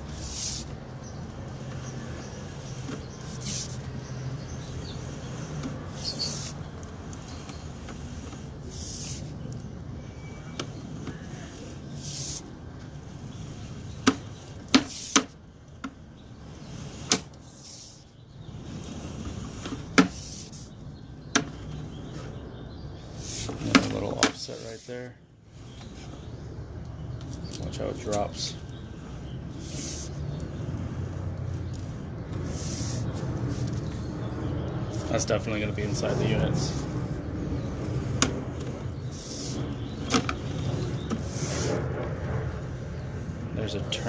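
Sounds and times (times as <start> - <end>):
cable handling and rubbing: 0.0 - 20.7
sharp clicks and knocks: 21.3 - 21.6.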